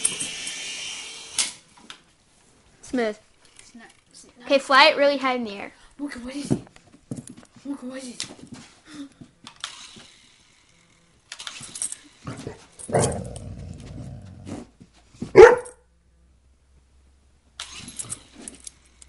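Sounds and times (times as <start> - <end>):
dog growling: 12.3 - 14.7
dog barking: 15.3 - 15.8.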